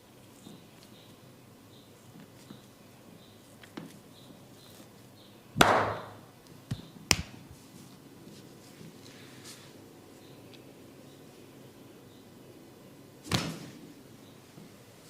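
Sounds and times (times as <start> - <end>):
sharp cracks: 5.6 - 6.3
hands slapping head: 5.6 - 7.4, 13.3 - 13.7.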